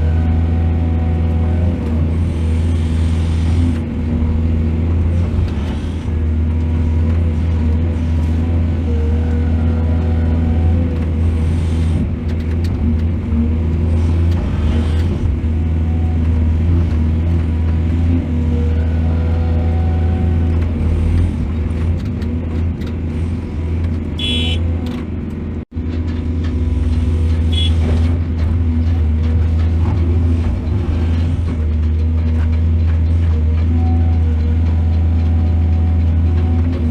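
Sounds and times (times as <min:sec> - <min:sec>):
excavator diesel engine rumbling: 0:00.0 - 0:36.9.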